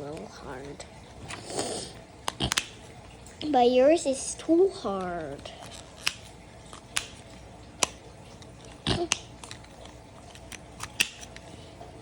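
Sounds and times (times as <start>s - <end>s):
plastic puzzle toy clicking: 10.3s - 11.4s.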